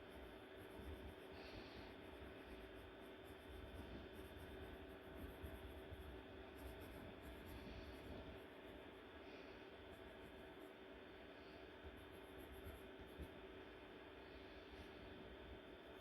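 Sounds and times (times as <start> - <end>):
drawing strokes scratching: 0.0 - 8.5, 12.0 - 13.3
low room hum: 0.0 - 16.0.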